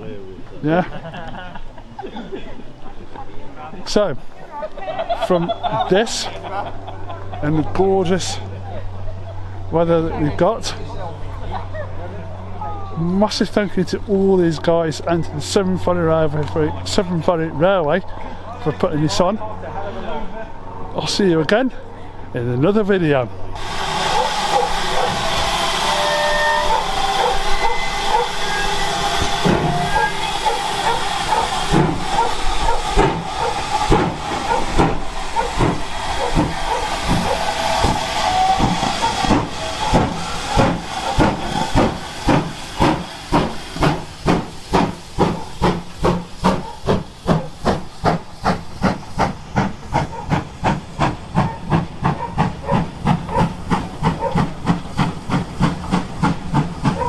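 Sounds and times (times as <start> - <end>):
steam locomotive hissing: 5.0 - 19.7, 20.5 - 57.0
steam locomotive exhaust chuffs: 20.5 - 57.0.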